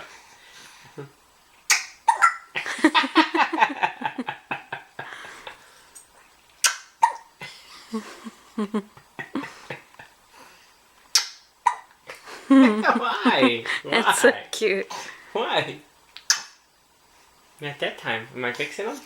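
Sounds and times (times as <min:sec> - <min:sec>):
baby hiccupping: 0:01.7 - 0:02.6, 0:06.6 - 0:07.3, 0:11.1 - 0:11.9, 0:16.2 - 0:16.6.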